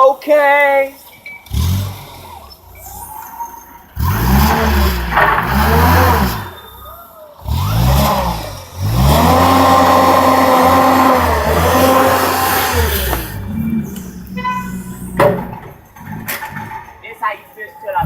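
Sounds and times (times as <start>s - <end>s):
engine revving: 1.4s - 3.2s, 3.9s - 6.8s, 7.4s - 17.0s.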